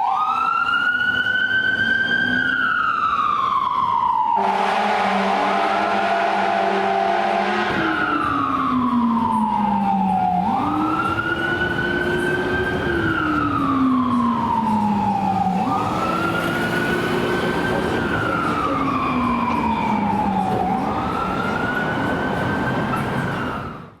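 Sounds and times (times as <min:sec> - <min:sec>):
fire engine siren wailing: 0:00.0 - 0:24.0.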